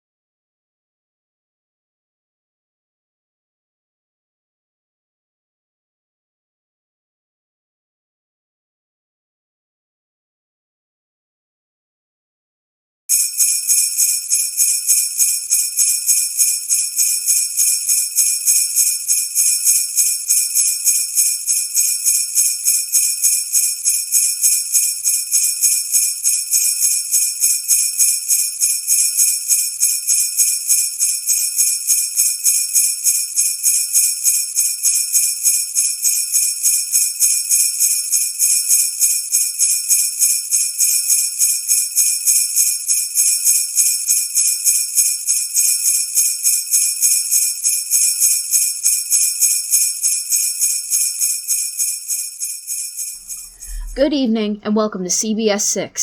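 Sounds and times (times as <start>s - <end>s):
jingle bells shaking: 13.1s - 54.2s.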